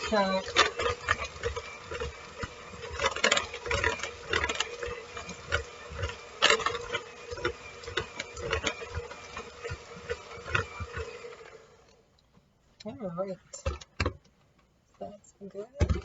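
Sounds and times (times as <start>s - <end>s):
utensils scraping against a dish: 0.0s - 11.2s.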